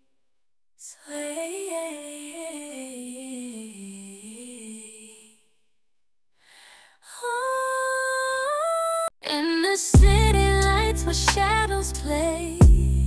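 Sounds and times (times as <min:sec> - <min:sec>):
pop song with held notes: 0:07.6 - 0:13.0
hummed vocal melody: 0:10.0 - 0:13.0.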